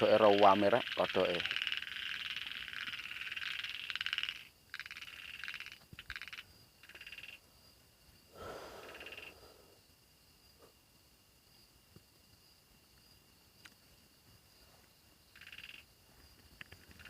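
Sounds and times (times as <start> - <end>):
frogs trilling: 0.0 - 7.7, 8.4 - 9.8, 15.3 - 17.0.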